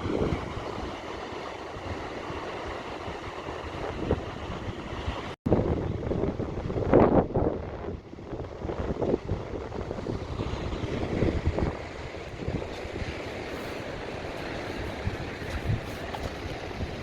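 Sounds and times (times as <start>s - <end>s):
wind buffeting microphone: 0.0s - 17.0s
heavy surf breaking: 8.5s - 17.0s.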